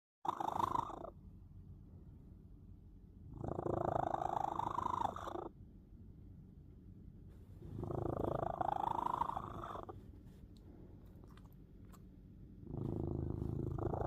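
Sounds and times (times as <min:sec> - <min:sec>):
cat snoring: 0:00.2 - 0:01.2, 0:03.3 - 0:05.6, 0:07.5 - 0:10.0, 0:12.6 - 0:14.0.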